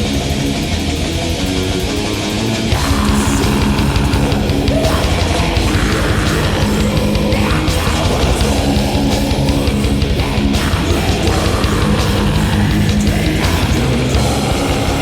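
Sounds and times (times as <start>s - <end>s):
black metal band playing: 0.0s - 15.0s.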